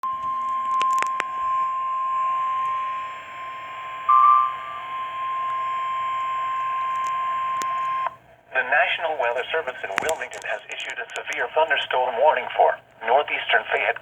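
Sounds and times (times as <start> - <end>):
steady high alarm tone: 0.0 - 8.2
clicks: 0.2 - 1.4, 5.4 - 8.2, 9.4 - 11.5
brief higher tone: 4.1 - 5.7
radio hiss: 4.6 - 14.0.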